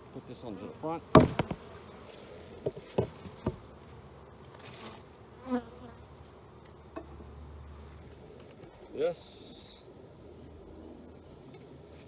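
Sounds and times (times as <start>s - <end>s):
honeybees buzzing: 0.0s - 6.5s
hive parts knocking: 1.1s - 1.8s.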